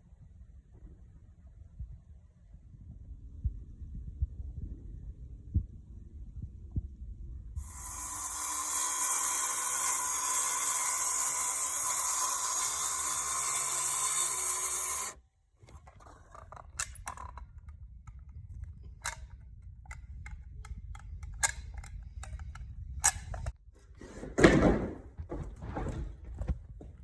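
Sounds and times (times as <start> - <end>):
power tool hissing: 7.6 - 15.2
knocks and scraping on boards: 23.8 - 27.0.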